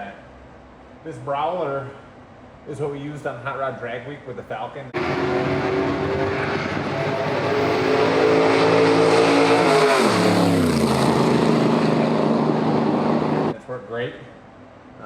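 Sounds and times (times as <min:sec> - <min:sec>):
car engine revving: 0:05.0 - 0:13.6.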